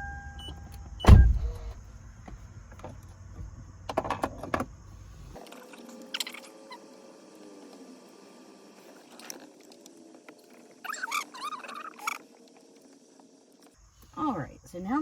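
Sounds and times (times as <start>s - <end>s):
car engine low rumble: 0.0s - 5.4s.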